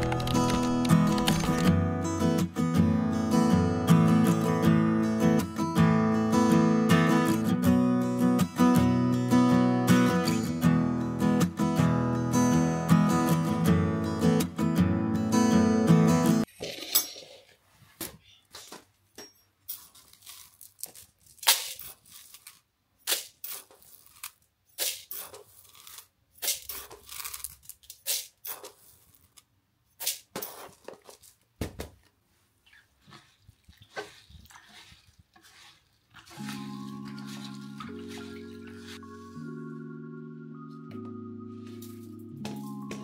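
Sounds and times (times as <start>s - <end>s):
rustling and crinkling: 0.0s - 1.7s, 19.7s - 22.7s, 30.1s - 39.4s.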